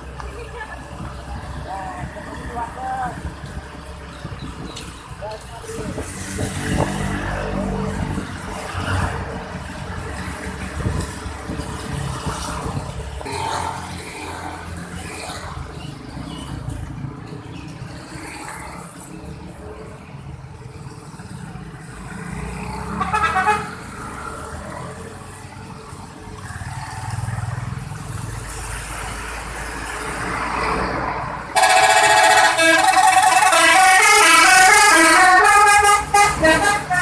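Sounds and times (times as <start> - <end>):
road traffic: 0.0 - 37.0
multi-tone bus horn: 22.8 - 23.9, 31.5 - 37.0.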